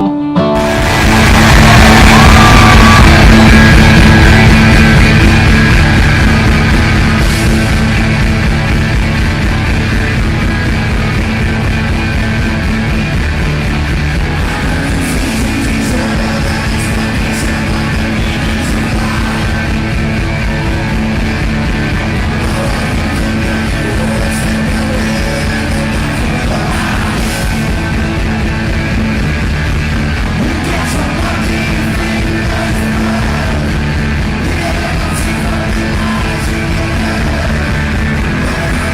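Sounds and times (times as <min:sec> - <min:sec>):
rock band music: 0:00.0 - 0:38.9
drums and cymbal hits: 0:00.6 - 0:38.9
person singing: 0:14.3 - 0:28.2, 0:30.4 - 0:38.9.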